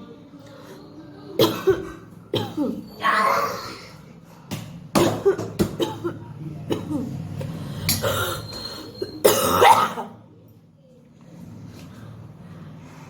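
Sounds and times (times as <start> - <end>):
woman coughing: 1.4 - 2.9, 5.0 - 7.2, 8.0 - 10.2.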